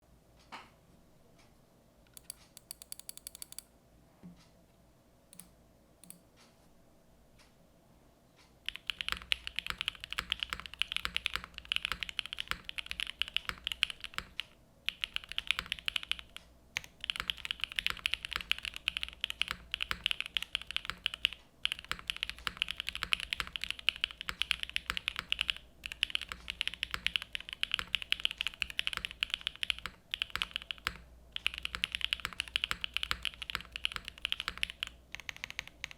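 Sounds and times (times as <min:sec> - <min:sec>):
typing on mechanical keyboard: 0:08.7 - 0:35.9.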